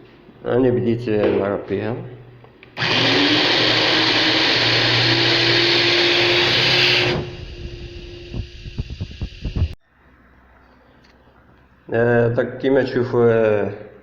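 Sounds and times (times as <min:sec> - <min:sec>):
electric blender grinding: 0:02.8 - 0:09.8.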